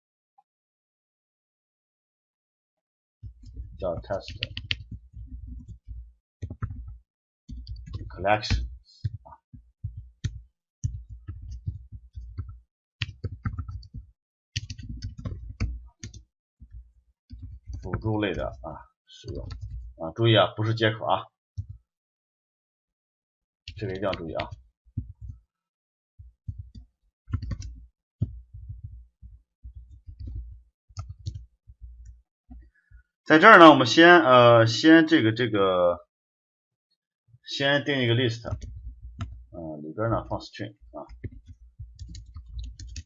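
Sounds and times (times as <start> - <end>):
computer keyboard typing: 3.4 - 14.0, 14.6 - 18.6, 19.3 - 19.9, 23.7 - 25.4, 26.5 - 29.0, 29.7 - 31.4, 38.5 - 39.4, 41.1 - 43.0.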